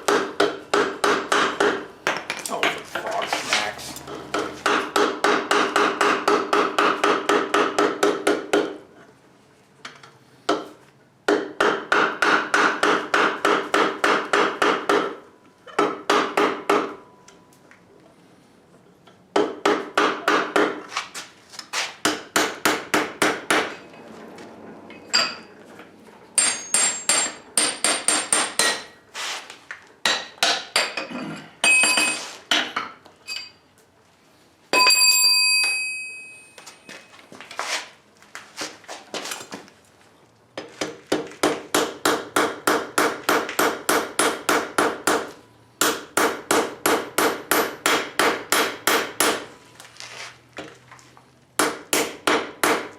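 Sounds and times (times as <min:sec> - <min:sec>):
ringing anvil clang: 0:26.4 - 0:27.4
hammer striking steel on anvil: 0:26.4 - 0:29.0, 0:30.0 - 0:33.5, 0:41.7 - 0:49.5.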